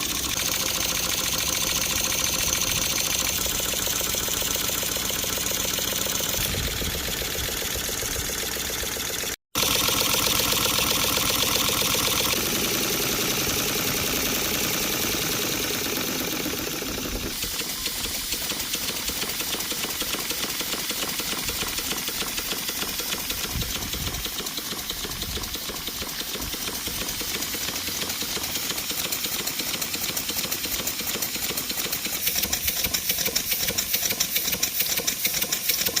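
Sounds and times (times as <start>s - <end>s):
steam engine beating: 0.0s - 36.0s
steam hiss: 11.2s - 36.0s.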